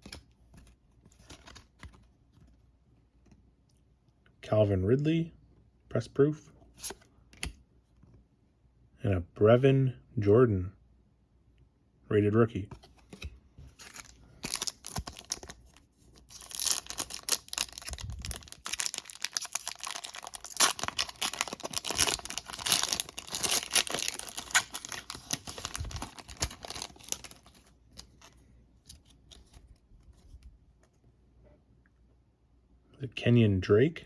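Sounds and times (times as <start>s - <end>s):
foil wrapper tearing and crinkling: 13.8s - 27.7s.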